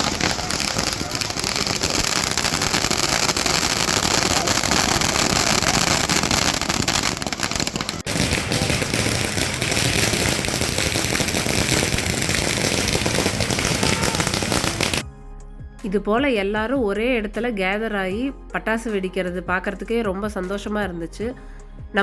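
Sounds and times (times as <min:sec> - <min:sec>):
firecrackers crackling: 0:00.0 - 0:15.0.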